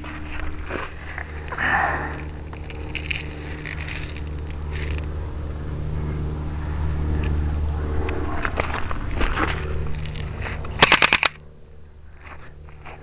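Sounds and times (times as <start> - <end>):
low droning hum: 0.0 - 13.0
clicks and rustles: 2.2 - 5.1, 8.1 - 11.4.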